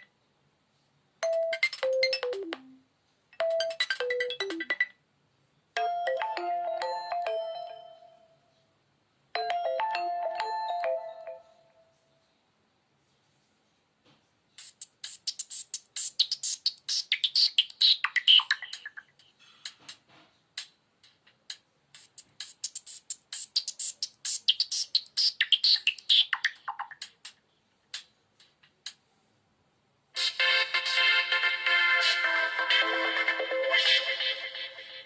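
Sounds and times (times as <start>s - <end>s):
electronic ringtone clicks and chirps: 1.2s - 2.8s, 3.4s - 5.0s, 5.8s - 8.4s, 9.4s - 11.9s.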